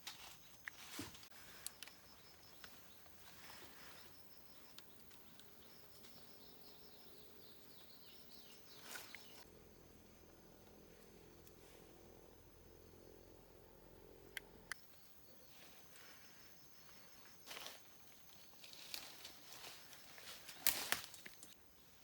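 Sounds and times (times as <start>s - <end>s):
bird chirping: 1.3s - 9.5s.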